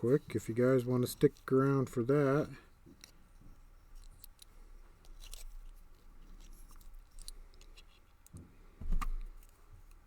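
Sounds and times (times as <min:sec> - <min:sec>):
lock parts clicking and rustling: 0:03.9 - 0:08.4.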